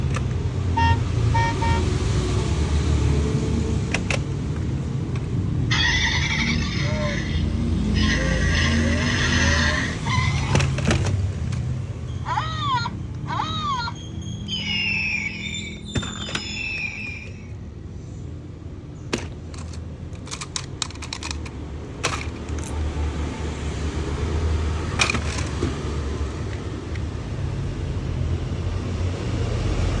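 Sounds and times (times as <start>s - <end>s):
low traffic rumble: 0.0s - 30.0s
high-pitched horn toots: 0.8s - 2.0s.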